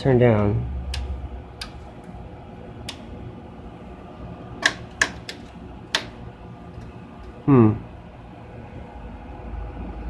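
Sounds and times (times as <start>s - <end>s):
steady electrical hum: 0.0s - 10.0s
oscilloscope controls clicking: 0.3s - 2.2s, 2.8s - 3.1s, 4.6s - 7.4s.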